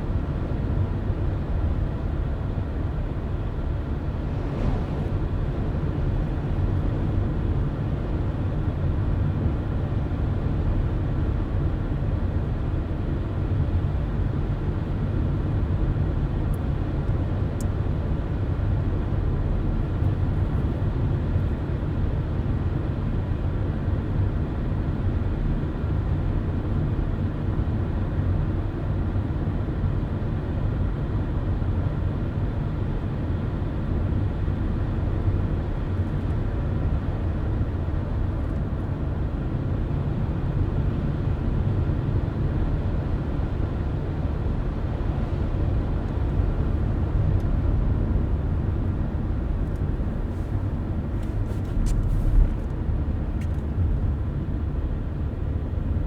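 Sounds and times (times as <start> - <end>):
car driving rumble: 1.5 - 8.6, 34.8 - 56.0.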